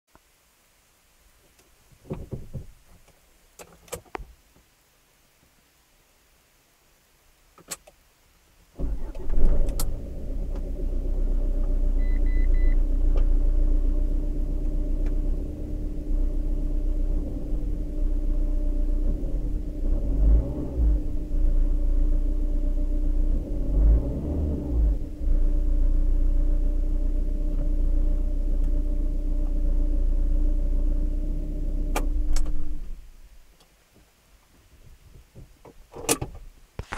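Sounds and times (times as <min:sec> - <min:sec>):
diesel engine idling and revving: 0:08.9 - 0:32.3
short beep: 0:12.0 - 0:12.8.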